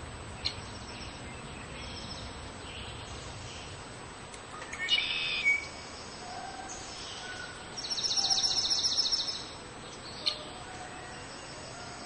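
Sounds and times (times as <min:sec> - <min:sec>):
faint outdoor background noise: 0:00.0 - 0:12.0
small bird chirping trill: 0:04.6 - 0:11.9.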